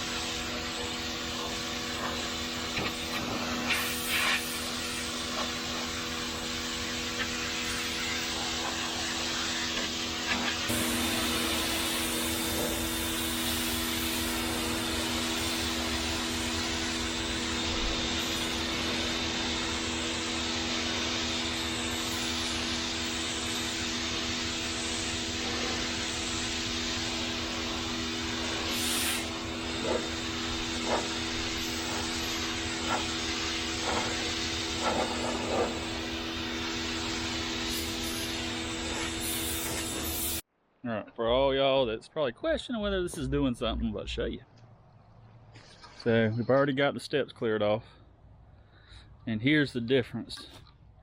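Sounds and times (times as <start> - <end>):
water spray hissing on concrete: 0.0 - 6.5, 10.2 - 40.4
pressure washer motor humming: 0.0 - 40.4.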